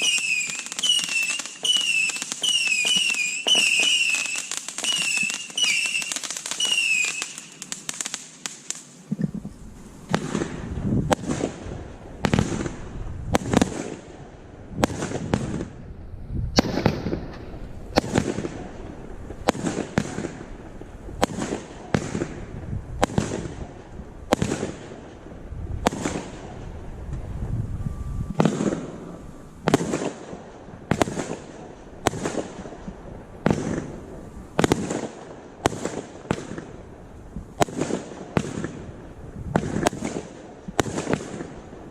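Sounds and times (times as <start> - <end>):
wavering firework whistles: 0.0 - 8.8, 25.9 - 31.2
firework shots and bursts: 0.0 - 8.9, 10.1 - 15.8, 16.5 - 25.2, 25.8 - 26.9, 28.4 - 41.9.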